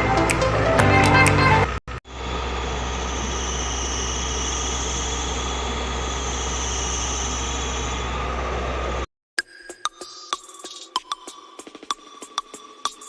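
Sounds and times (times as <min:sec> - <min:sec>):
diesel engine rumbling: 0:00.0 - 0:09.1.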